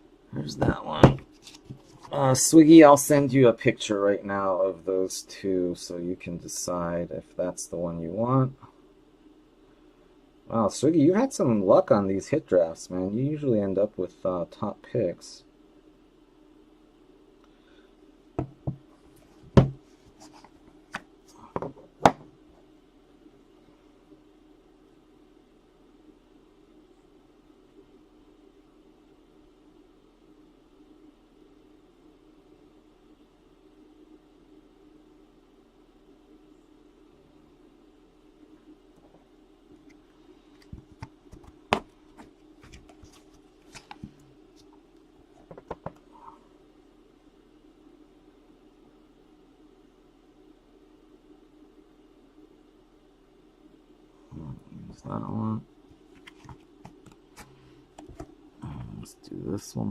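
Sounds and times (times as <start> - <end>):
steady low hum: 0.0 - 59.9
cards tapping and clicking on table: 45.4 - 46.0.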